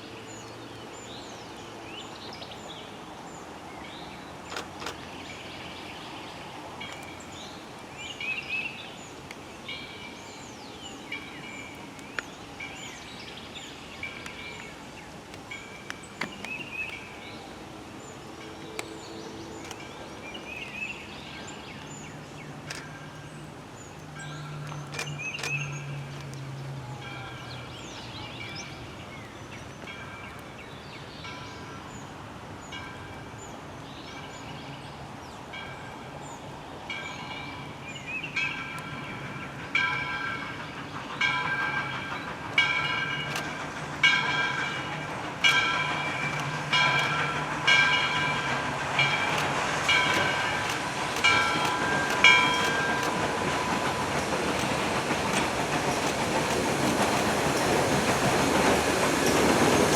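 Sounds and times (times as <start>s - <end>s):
train rumble: 0.1s - 30.6s, 31.2s - 59.9s
locomotive bell ringing: 36.9s - 59.9s.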